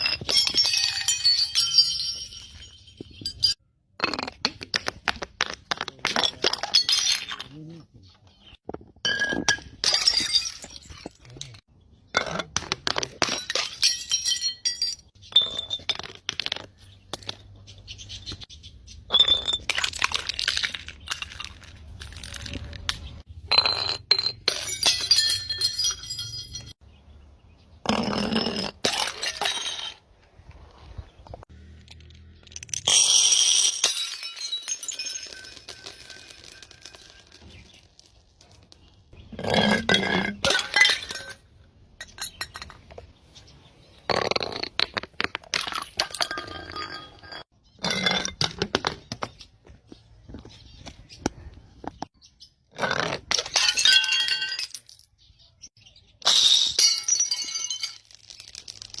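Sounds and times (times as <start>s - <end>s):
glass pieces clinking: 0.0s - 4.3s, 5.4s - 7.6s, 9.0s - 17.4s, 19.1s - 26.8s, 28.0s - 30.0s, 31.8s - 38.2s, 39.4s - 43.0s, 44.1s - 48.6s, 52.8s - 55.2s, 56.2s - 59.0s
glass bottles smashing: 0.0s - 7.6s, 9.0s - 17.4s, 19.1s - 26.8s, 27.9s - 30.0s, 31.9s - 42.9s, 44.1s - 48.9s, 52.8s - 55.2s, 56.2s - 59.0s.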